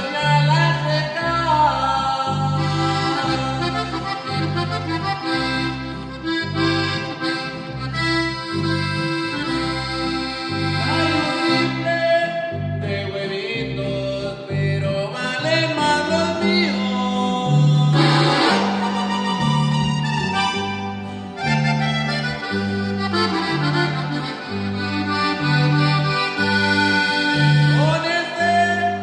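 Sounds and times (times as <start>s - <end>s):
accordion melody: 0.0s - 1.2s, 2.5s - 12.6s, 15.2s - 29.0s
electric bass line: 0.0s - 11.9s, 12.6s - 29.0s.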